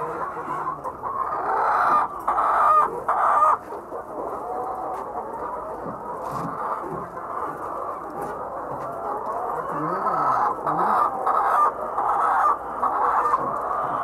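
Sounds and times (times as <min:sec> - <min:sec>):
chickens clucking and calling: 0:00.0 - 0:14.0.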